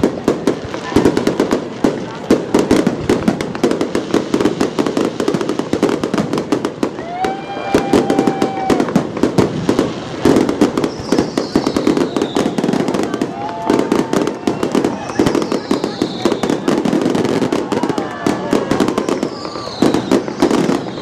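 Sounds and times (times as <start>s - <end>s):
fireworks crackling and banging: 0.0s - 21.0s
firework whistling: 2.4s - 21.0s.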